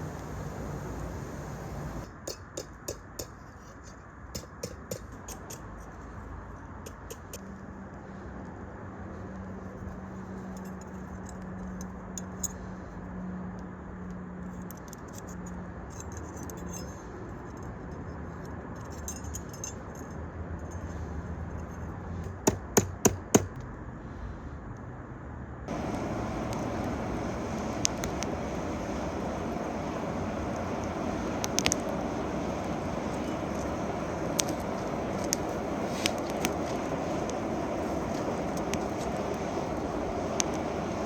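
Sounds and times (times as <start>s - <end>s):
forge blower rushing: 0.0s - 2.1s, 25.7s - 41.0s
light metallic clinks: 14.7s - 21.0s.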